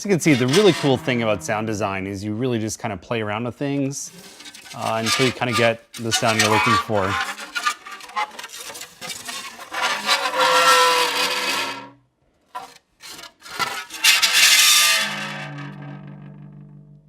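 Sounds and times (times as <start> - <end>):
metal screeching on dry ice: 0.0 - 1.8, 4.1 - 12.0, 12.6 - 15.8.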